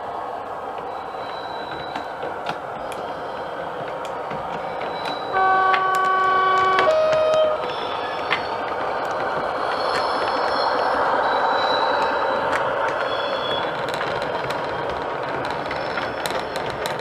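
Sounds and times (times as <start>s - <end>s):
model locomotive engine sound: 0.0s - 17.0s
scattered clicks: 1.6s - 17.0s
two-tone horn: 5.3s - 7.7s.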